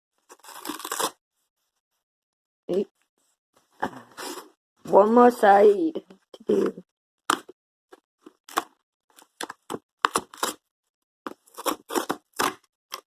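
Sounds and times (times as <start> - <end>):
cardboard tearing: 0.2 - 1.2, 9.3 - 10.6, 11.3 - 12.7.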